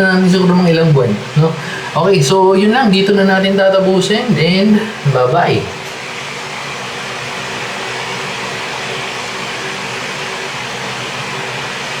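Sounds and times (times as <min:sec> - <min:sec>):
fan whooshing: 0:00.0 - 0:12.0.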